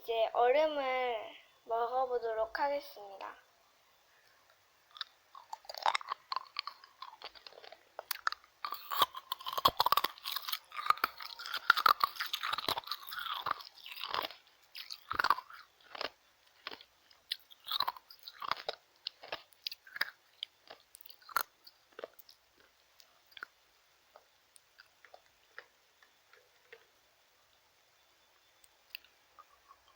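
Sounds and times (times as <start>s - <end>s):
ice cubes crunched in mouth: 4.9s - 22.7s.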